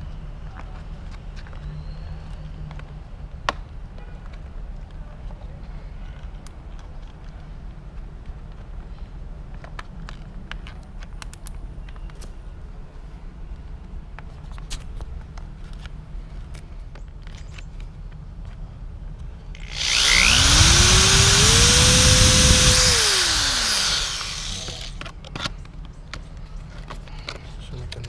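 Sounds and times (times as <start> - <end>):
power drill boring: 19.6 - 25.0.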